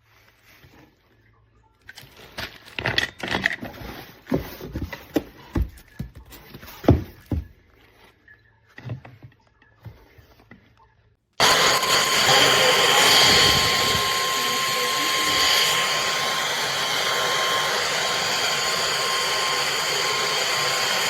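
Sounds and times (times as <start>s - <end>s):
stick vacuum motor whine: 11.4s - 21.0s.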